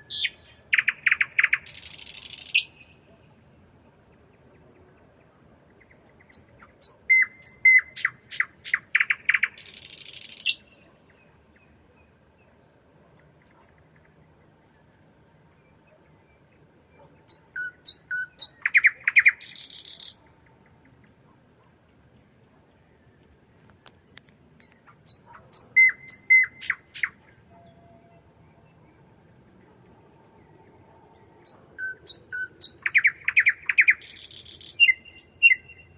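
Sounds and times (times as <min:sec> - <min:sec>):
nightingale singing: 0:00.0 - 0:03.3, 0:05.8 - 0:14.2, 0:15.8 - 0:21.2, 0:24.0 - 0:29.0, 0:31.0 - 0:35.9.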